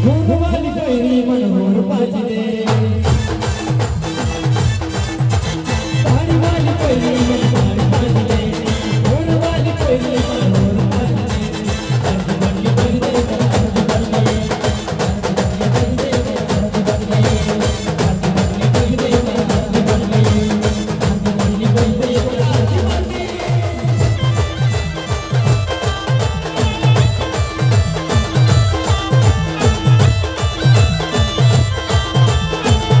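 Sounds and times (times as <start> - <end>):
fast drum beat: 0.0 - 33.0
held melody: 21.5 - 33.0.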